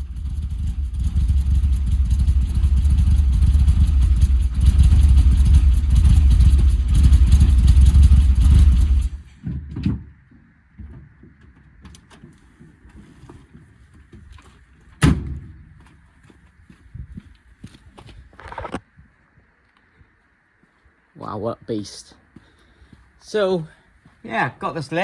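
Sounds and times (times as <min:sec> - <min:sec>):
car engine low rumble: 0:00.0 - 0:12.5.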